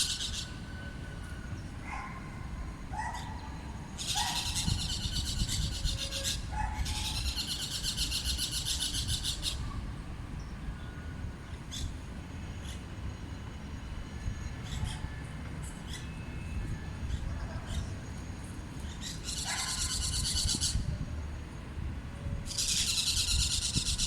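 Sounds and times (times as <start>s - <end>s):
birds chirping and trilling: 0.0s - 0.9s, 1.5s - 9.8s, 15.7s - 18.2s, 18.8s - 20.9s, 22.5s - 24.0s
low rumble of road traffic: 0.0s - 24.0s.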